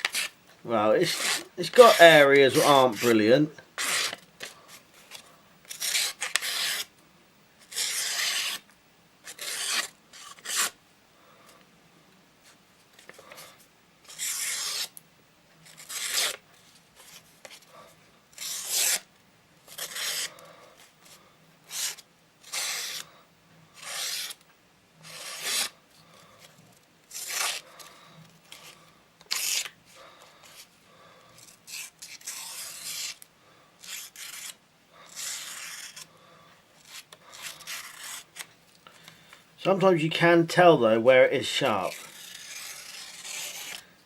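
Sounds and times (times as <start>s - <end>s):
knife scraping on whetstone: 1.0s - 3.2s, 3.8s - 4.2s, 5.7s - 6.9s, 7.7s - 8.6s, 9.3s - 10.7s, 31.4s - 33.2s, 33.8s - 34.5s, 35.1s - 36.1s, 36.8s - 38.4s, 41.8s - 43.8s.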